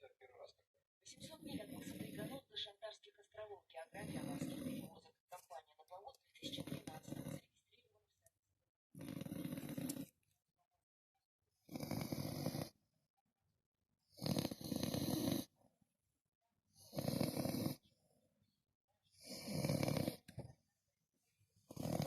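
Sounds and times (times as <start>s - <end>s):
dog snoring: 1.3s - 2.5s, 3.9s - 5.0s, 6.4s - 7.5s, 8.9s - 10.2s, 11.6s - 12.8s, 14.1s - 15.6s, 16.8s - 17.9s, 19.1s - 20.5s, 21.6s - 22.0s.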